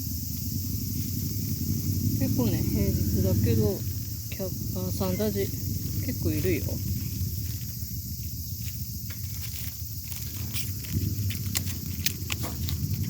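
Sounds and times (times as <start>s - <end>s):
high drone of insects: 0.0s - 13.0s
clicks and rustles of handling: 8.6s - 13.0s.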